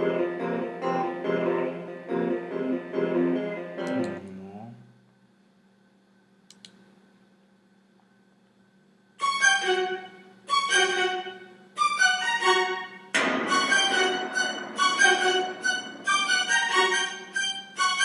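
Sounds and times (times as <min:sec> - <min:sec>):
faint clicks: 0:06.5 - 0:06.8
dramatic bowed-string stabs: 0:13.1 - 0:18.0.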